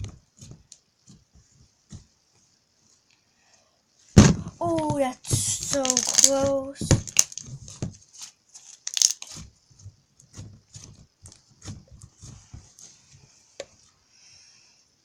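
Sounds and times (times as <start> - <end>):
sticky slime clicks and crackles: 5.6 - 6.4, 7.0 - 7.4, 8.9 - 9.3.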